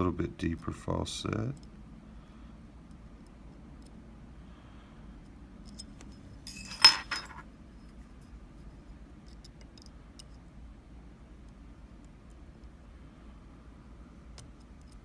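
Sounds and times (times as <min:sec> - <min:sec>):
lock picks clinking on metal: 0:05.6 - 0:07.4.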